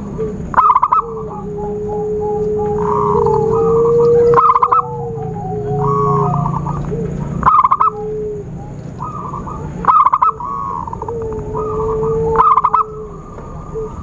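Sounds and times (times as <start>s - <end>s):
dove cooing: 0.0s - 14.0s.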